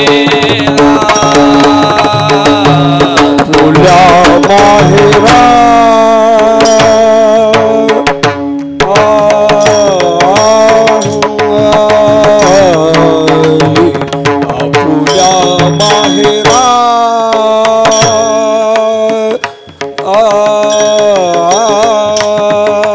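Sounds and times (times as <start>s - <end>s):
devotional singing: 0.0s - 8.0s, 8.8s - 14.0s
tabla and percussion: 0.0s - 22.9s.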